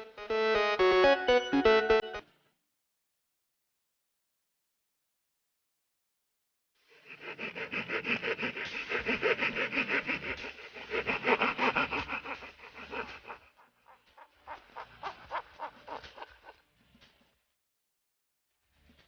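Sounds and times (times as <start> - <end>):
hand saw cutting: 6.9 - 13.5.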